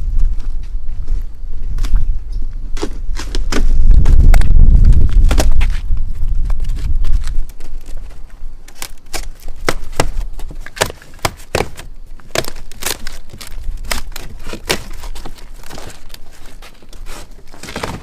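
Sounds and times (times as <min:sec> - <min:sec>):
low rumble: 0:03.7 - 0:07.4
packaging crinkling: 0:11.7 - 0:18.0.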